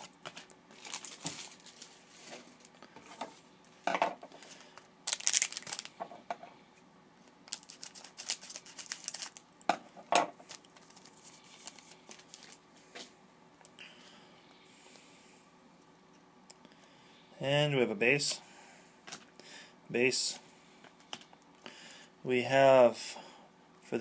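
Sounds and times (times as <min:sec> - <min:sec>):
wrapper crinkling and tearing: 0:00.0 - 0:02.8, 0:04.4 - 0:06.0, 0:07.4 - 0:09.5, 0:10.4 - 0:12.6.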